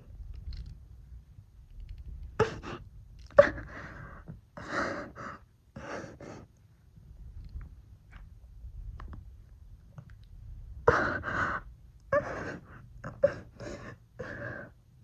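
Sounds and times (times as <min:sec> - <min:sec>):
person breathing hard: 0:02.4 - 0:06.5, 0:10.8 - 0:14.8
voiced whimper: 0:10.8 - 0:14.8.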